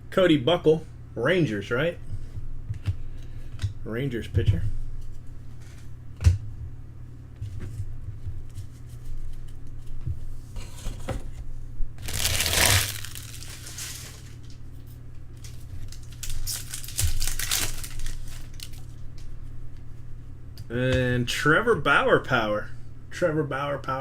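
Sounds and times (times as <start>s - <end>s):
steady low hum: 0.0s - 24.0s
card packaging crinkling: 12.0s - 14.6s, 15.4s - 19.1s.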